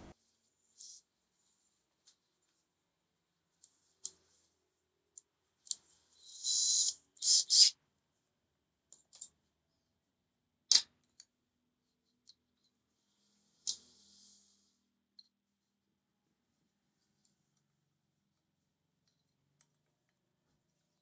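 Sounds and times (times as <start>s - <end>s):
sharp clicks of small parts: 8.9s - 9.4s, 10.7s - 11.3s.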